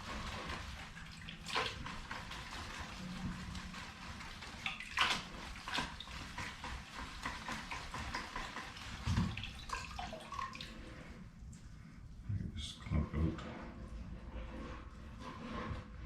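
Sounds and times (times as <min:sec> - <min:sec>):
water sloshing in a bucket: 0:00.0 - 0:12.3.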